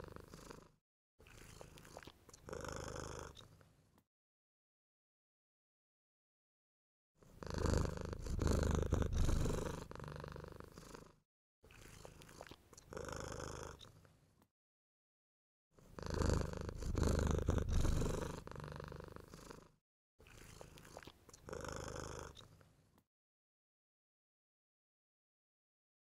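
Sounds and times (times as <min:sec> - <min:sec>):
cat purring loudly: 0:00.0 - 0:03.5, 0:07.2 - 0:14.0, 0:15.8 - 0:22.6.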